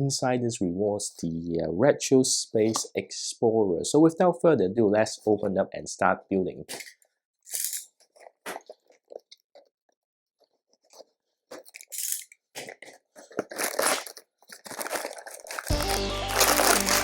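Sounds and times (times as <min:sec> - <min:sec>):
cardboard and plastic tearing: 0:10.9 - 0:17.0
music: 0:15.7 - 0:17.0.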